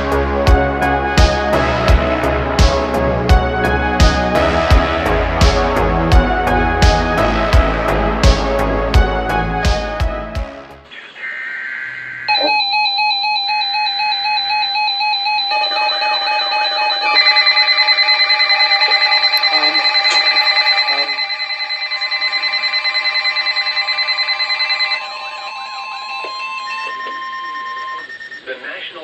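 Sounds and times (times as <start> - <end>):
warbling electronic alarm beeps: 11.3 - 29.0
steady alert tone: 12.3 - 28.4.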